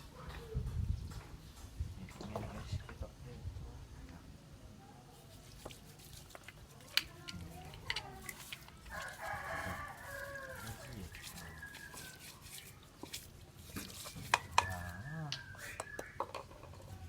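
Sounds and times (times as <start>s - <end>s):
rooster crowing: 8.9s - 12.4s, 14.3s - 16.4s.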